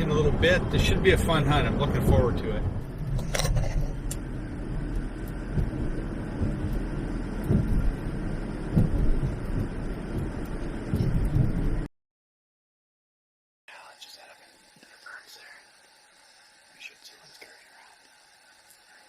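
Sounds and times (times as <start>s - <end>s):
car road rumble from inside: 0.0s - 11.9s
dull thumps: 4.9s - 11.9s.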